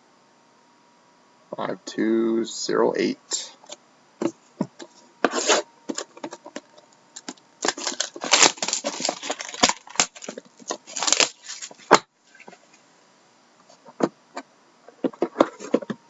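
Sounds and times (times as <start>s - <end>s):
plastic wrap and cardboard crinkling: 4.8s - 12.6s.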